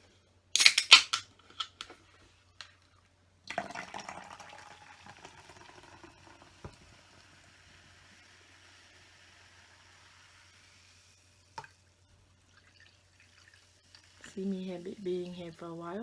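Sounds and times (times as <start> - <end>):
drink being poured: 3.5 - 8.0.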